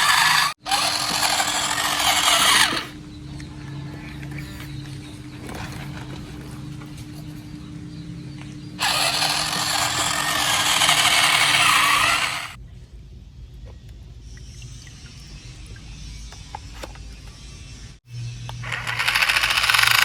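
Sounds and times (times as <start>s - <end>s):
toy gear motor whirring: 0.0s - 7.6s, 8.8s - 12.6s, 18.2s - 20.0s.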